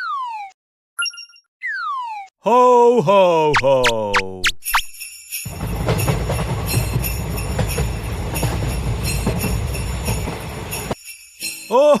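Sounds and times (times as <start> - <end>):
sleigh bells jingling: 4.6 - 12.0.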